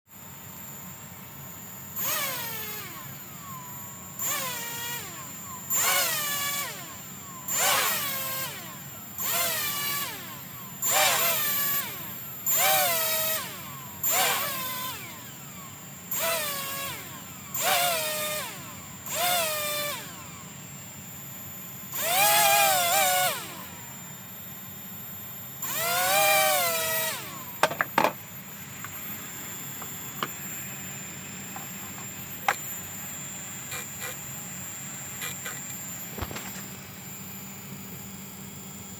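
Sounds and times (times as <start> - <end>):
quadcopter motors whining: 0.3 - 38.9
sharp clicks: 35.2 - 35.8.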